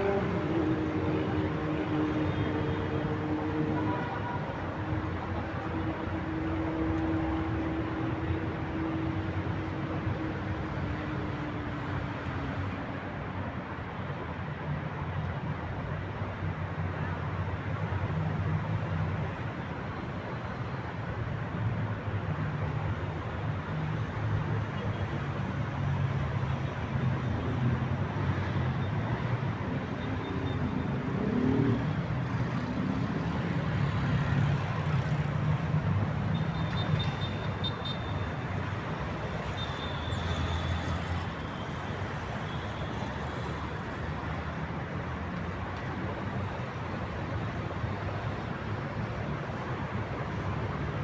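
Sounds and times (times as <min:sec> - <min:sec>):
city road traffic rumble: 0:00.0 - 0:51.0.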